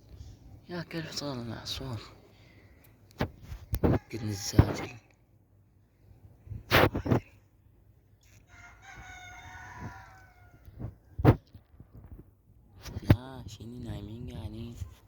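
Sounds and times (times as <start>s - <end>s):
rooster crowing: 3.9s - 4.8s, 8.5s - 10.8s.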